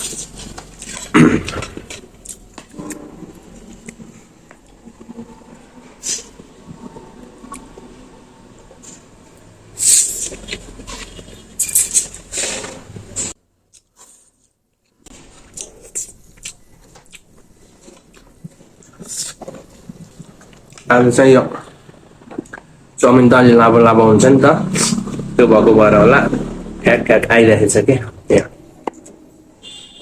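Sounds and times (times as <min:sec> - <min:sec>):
person slurping and chewing noodles: 0:00.0 - 0:20.9, 0:21.6 - 0:23.0.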